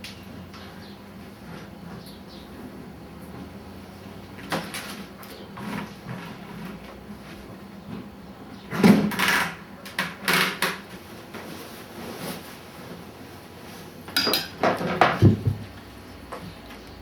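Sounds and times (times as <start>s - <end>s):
hard objects knocking and scraping: 14.2s - 15.7s.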